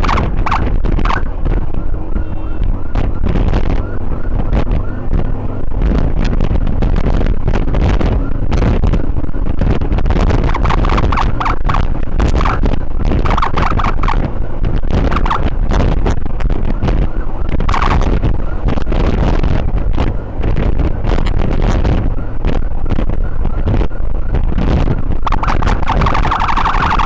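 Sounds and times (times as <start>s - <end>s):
emergency siren whooping: 0.0s - 5.8s, 10.4s - 14.4s, 15.0s - 15.6s, 17.1s - 18.6s, 25.2s - 27.0s
motorcycle engine rumble: 0.0s - 27.0s
wind rush: 0.0s - 27.0s.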